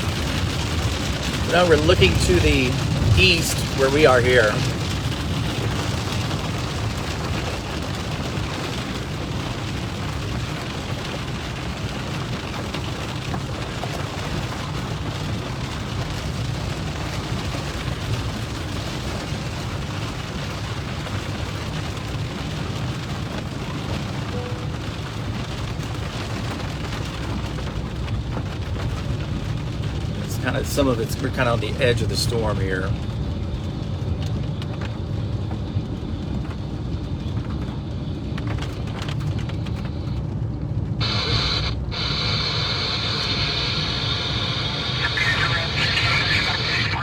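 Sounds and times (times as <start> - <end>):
road and engine rumble: 0.0 - 47.0
steady rain: 0.0 - 47.0.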